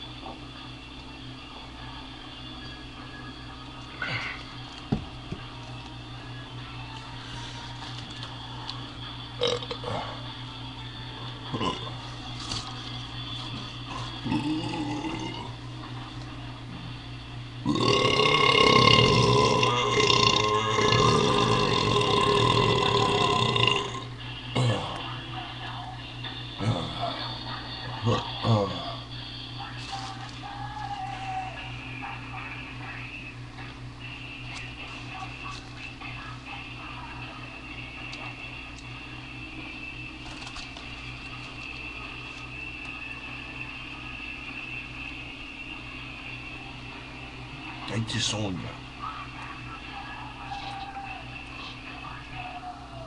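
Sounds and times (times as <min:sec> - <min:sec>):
low electrical hum: 0:00.0 - 0:53.0
thin high whine: 0:00.0 - 0:53.0
long loud burp: 0:14.2 - 0:15.5, 0:17.6 - 0:24.1.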